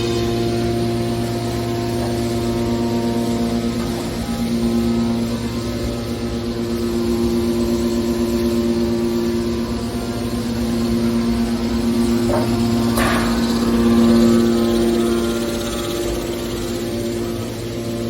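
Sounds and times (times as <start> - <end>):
hydraulic power unit humming: 0.0 - 18.0
metal scraping clank: 12.2 - 14.1.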